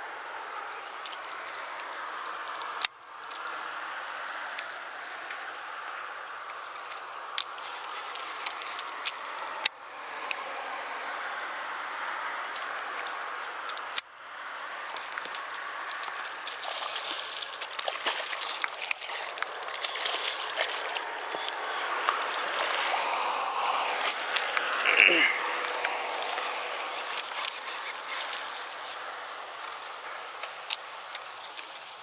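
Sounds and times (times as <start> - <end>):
small ticks: 0.3 - 10.4, 11.1 - 32.0
water sloshing and splashing: 6.6 - 11.4, 14.6 - 24.8.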